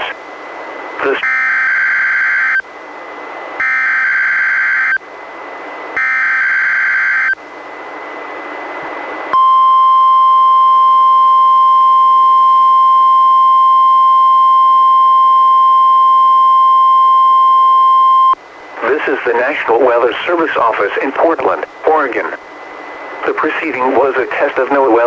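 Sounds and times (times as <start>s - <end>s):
radio hiss: 0.0s - 0.2s, 0.9s - 1.2s, 18.6s - 25.0s
steady warning alarm tone: 1.2s - 2.7s, 3.6s - 5.0s, 5.6s - 7.4s, 9.3s - 22.2s.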